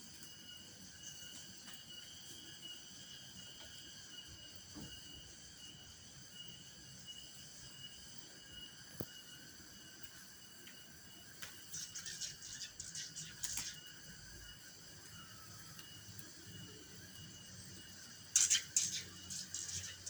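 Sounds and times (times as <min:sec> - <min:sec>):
faint chorus of insects: 0:00.0 - 0:20.0
sharp click: 0:18.4 - 0:19.9.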